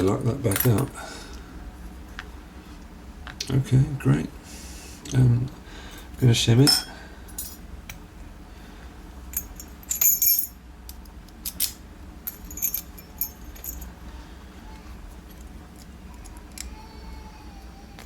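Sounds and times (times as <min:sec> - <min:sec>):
metal tools clinking on lock: 0:11.5 - 0:13.9.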